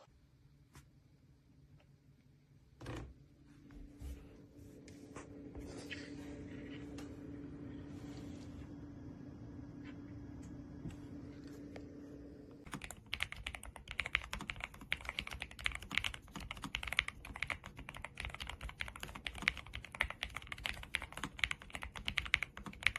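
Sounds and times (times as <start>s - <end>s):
steady low hum: 0.0s - 18.2s
fast typing on keyboard: 12.7s - 22.9s.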